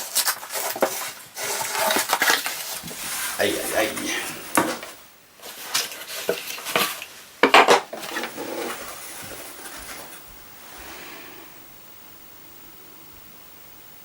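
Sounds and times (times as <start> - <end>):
handling noise: 0.0 - 10.5.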